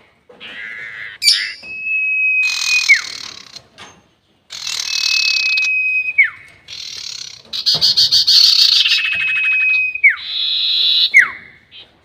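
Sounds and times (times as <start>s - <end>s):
bird whistling high note: 8.8s - 10.2s.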